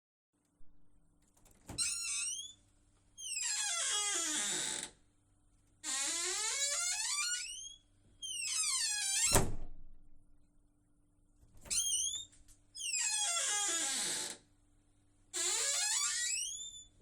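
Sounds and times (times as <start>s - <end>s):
squeaking door hinges: 1.4s - 2.6s, 3.2s - 5.0s, 5.8s - 9.7s, 11.6s - 14.4s, 15.4s - 17.0s.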